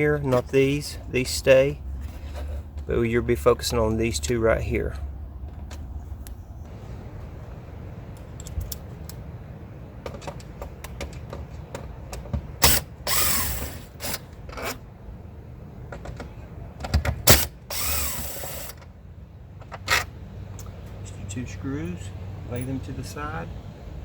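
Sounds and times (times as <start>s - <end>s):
power driver backing out screws: 10.2s - 14.8s, 16.8s - 18.8s
tool and screw clicks: 12.1s - 14.8s, 16.8s - 18.8s.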